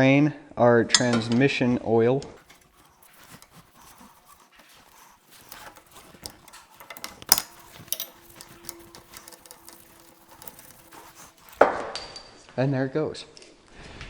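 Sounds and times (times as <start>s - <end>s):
metal tool clinks: 2.4s - 11.6s
socket ratchet clicking: 2.4s - 11.6s.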